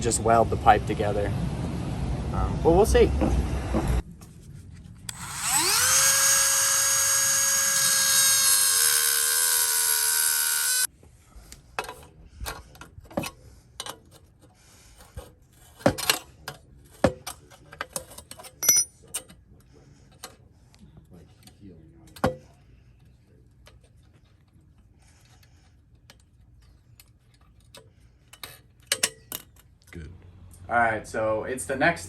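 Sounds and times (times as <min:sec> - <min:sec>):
power tool whining: 0:05.1 - 0:10.9
metal parts clicking and knocking: 0:15.8 - 0:19.4, 0:26.1 - 0:29.8.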